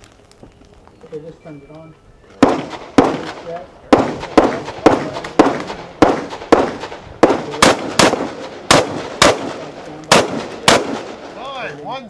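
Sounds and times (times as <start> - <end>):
rapid gunshots with echo: 2.4 - 11.4.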